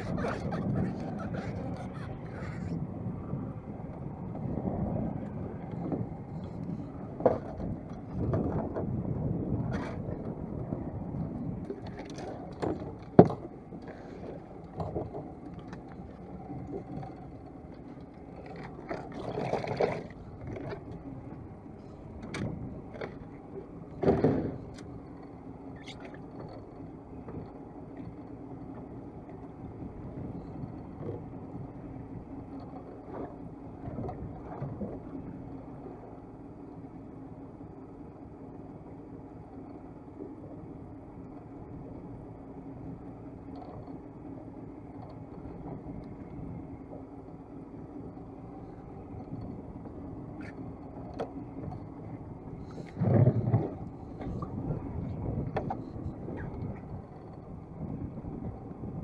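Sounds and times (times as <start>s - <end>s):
knocks and scrapes on boat: 0.0s - 29.1s, 32.4s - 36.0s, 47.9s - 59.0s
wind: 0.0s - 59.0s.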